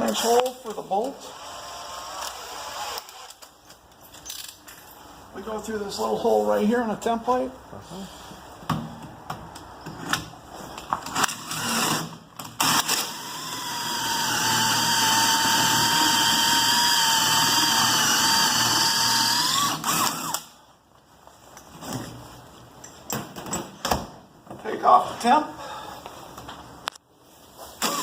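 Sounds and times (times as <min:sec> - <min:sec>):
power drill whining: 0:11.2 - 0:20.5, 0:27.8 - 0:28.0.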